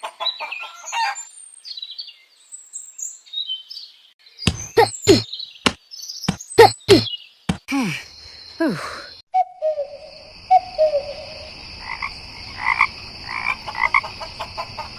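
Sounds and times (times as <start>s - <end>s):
small birds chirping: 0.0s - 12.0s.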